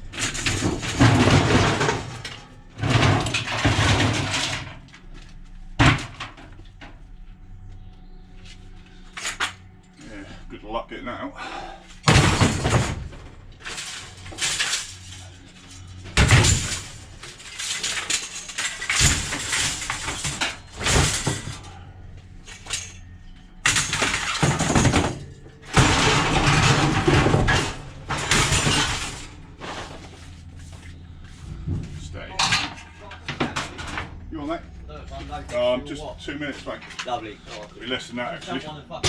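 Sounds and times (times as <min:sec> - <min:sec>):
scrap metal crashing and clattering: 0:00.0 - 0:04.8, 0:12.0 - 0:21.8, 0:23.6 - 0:30.3.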